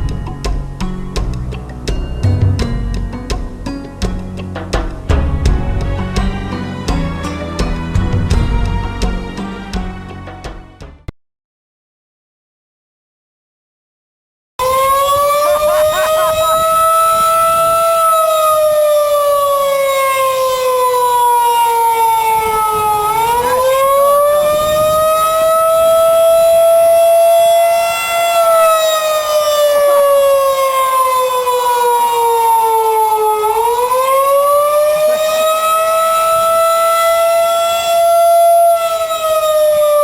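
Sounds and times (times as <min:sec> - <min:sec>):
warning siren wailing: 0:14.6 - 0:40.0.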